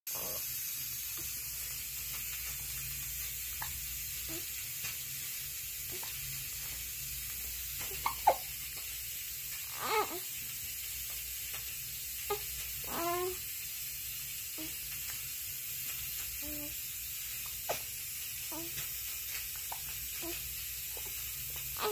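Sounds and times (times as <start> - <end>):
baby hiccuping: 7.9 - 8.5
high-pitched baby squeaks: 7.9 - 8.5, 9.7 - 10.2, 12.3 - 13.4.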